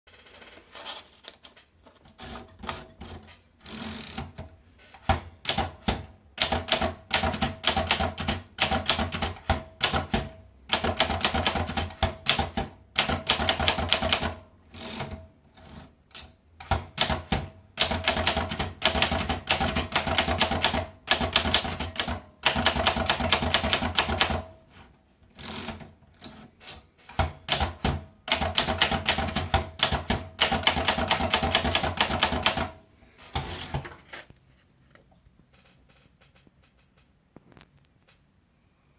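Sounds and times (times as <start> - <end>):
manual typewriter keystrokes: 2.2 - 24.6, 25.4 - 33.9.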